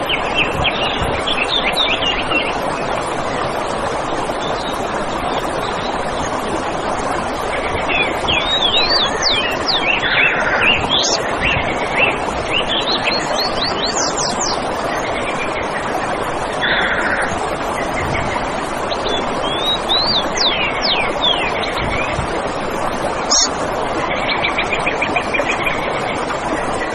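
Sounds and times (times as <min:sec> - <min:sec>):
buzzy bird calls: 0:10.4 - 0:11.2, 0:23.3 - 0:23.6
small birds chirping: 0:10.6 - 0:11.2, 0:23.3 - 0:23.6.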